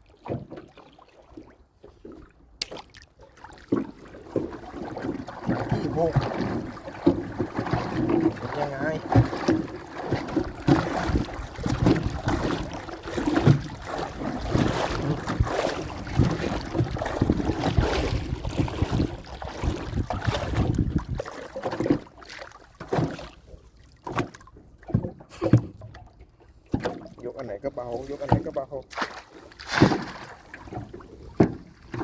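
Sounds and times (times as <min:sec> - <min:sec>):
water sounds: 0:00.0 - 0:32.0
wind on microphone: 0:14.4 - 0:21.3.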